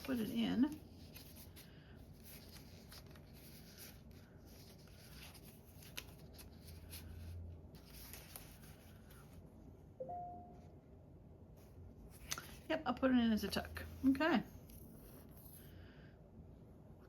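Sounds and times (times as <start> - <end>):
paper rustling: 0.0 - 9.5, 12.0 - 12.7
steady tone: 10.0 - 10.8.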